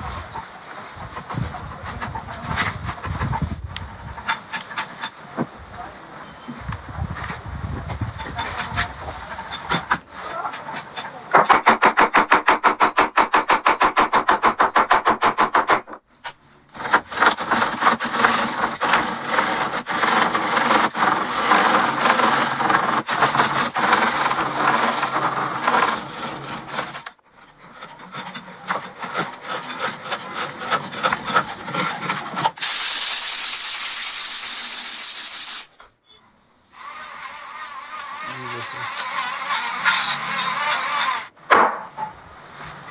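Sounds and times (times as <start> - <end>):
tool rasping wood: 11.5 - 16.0, 16.8 - 35.7, 36.7 - 41.3
steady loud hiss: 32.6 - 35.8.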